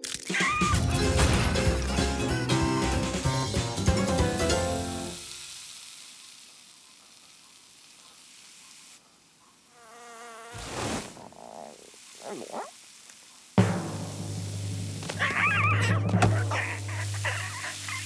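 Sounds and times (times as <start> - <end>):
cartoon music: 0.4 - 5.2, 15.1 - 18.0
loud hit: 0.8 - 2.0, 13.6 - 17.6
faint hiss: 4.6 - 18.0.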